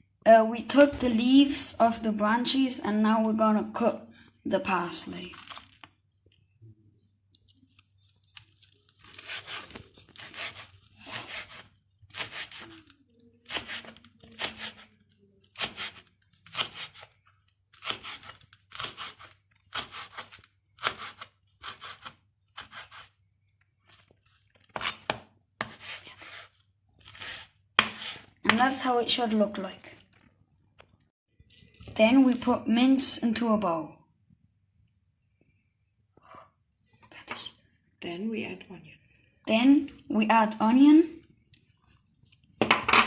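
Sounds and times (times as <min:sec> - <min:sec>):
knife chopping on cutting board: 0:15.6 - 0:17.1, 0:27.1 - 0:28.7.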